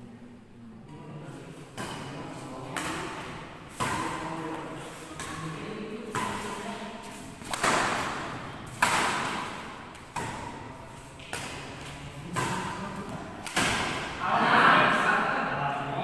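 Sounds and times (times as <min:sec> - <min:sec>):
rackets hitting shuttlecock: 0:01.7 - 0:14.2.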